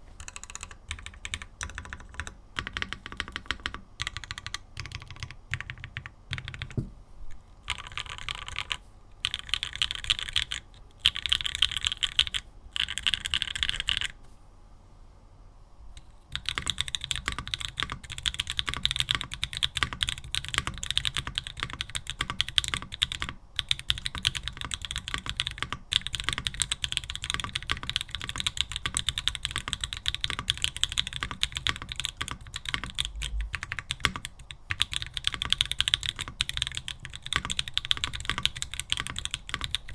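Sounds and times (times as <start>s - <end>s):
mechanical keyboard typing: 0.2s - 6.9s, 7.7s - 14.2s, 16.3s - 39.9s.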